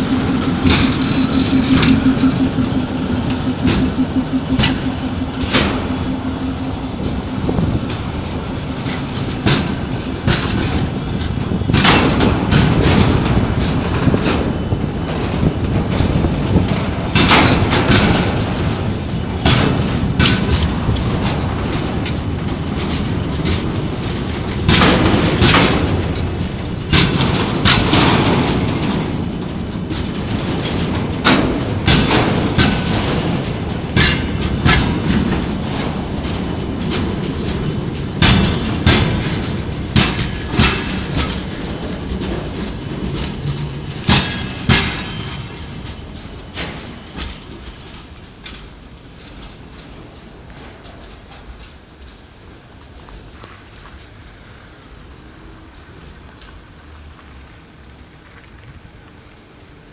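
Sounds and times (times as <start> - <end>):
sharp metal clanks and knocks: 0.0 - 14.4, 22.8 - 48.7
locomotive engine rumbling: 0.0 - 59.9.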